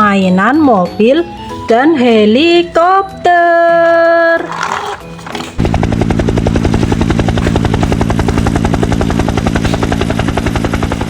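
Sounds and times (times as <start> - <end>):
toy helicopter rotor sound: 5.6 - 11.0.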